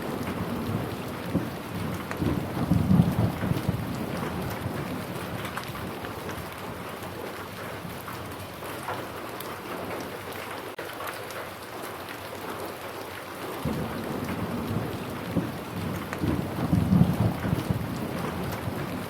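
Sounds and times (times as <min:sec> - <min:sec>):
low rumble of thunder: 0:00.0 - 0:08.4, 0:13.6 - 0:19.0
steady rain falling: 0:00.0 - 0:19.0.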